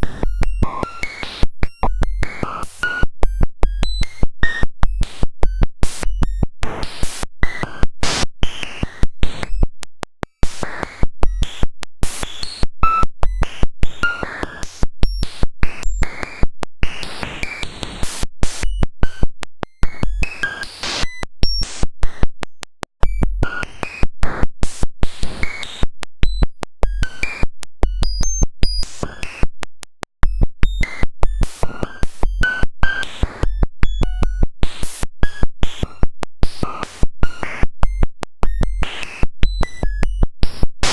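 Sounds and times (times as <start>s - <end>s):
digital clicking and buzzing noise: 0.0s - 40.9s.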